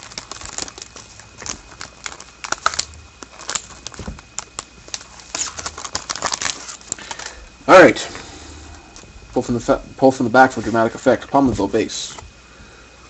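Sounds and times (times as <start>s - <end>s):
wrapper being torn open: 0.0s - 7.4s.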